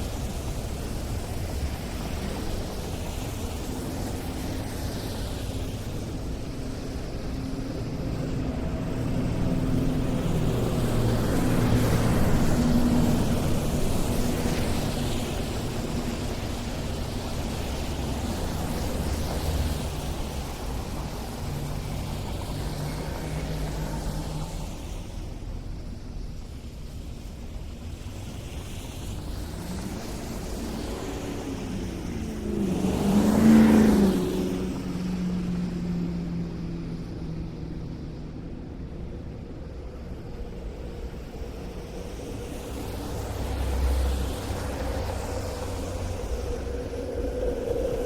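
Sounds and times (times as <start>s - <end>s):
low rumble of cars: 0.0s - 48.0s
vehicle passing close: 29.6s - 38.0s.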